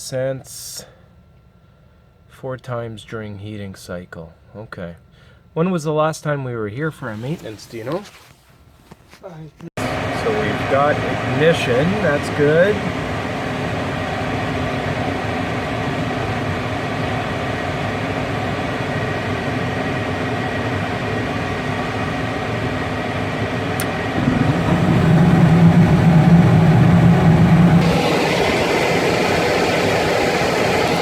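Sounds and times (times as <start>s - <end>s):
furnace mechanical hum: 0.0s - 31.0s
deep hum: 21.8s - 31.0s
broad rushing noise: 23.8s - 31.0s.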